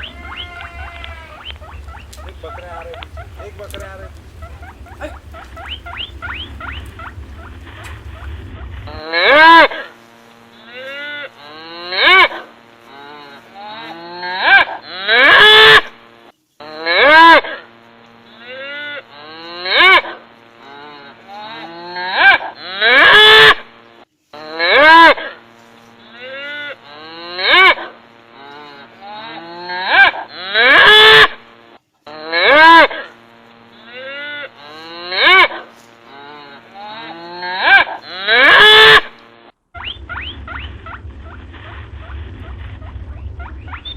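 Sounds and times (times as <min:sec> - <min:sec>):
cattle mooing: 0:00.0 - 0:15.9, 0:18.3 - 0:23.6, 0:26.0 - 0:31.4, 0:32.1 - 0:39.2.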